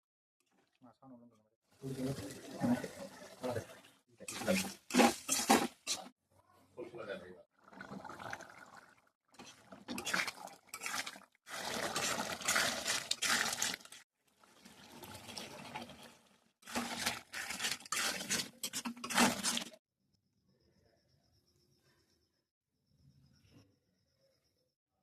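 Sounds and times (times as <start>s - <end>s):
liquid splashing and pouring: 1.8s - 6.1s, 7.6s - 19.8s.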